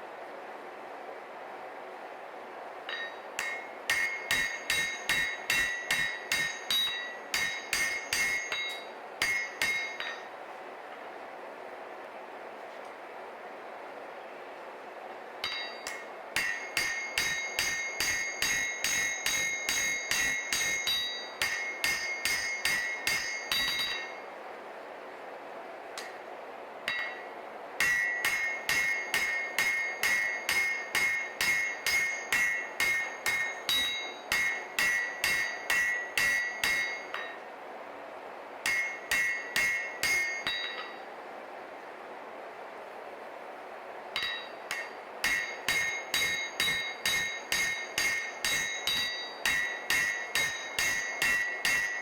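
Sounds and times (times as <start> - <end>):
hammer striking steel on anvil: 2.9 - 10.3, 15.4 - 24.2, 26.0 - 26.2, 26.8 - 37.4, 38.6 - 41.1, 44.2 - 52.0.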